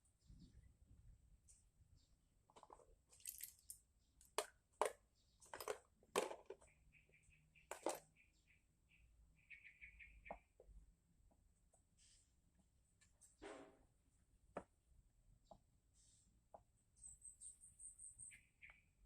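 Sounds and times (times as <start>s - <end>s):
small metal parts clicking: 2.5s - 4.5s, 7.7s - 8.0s.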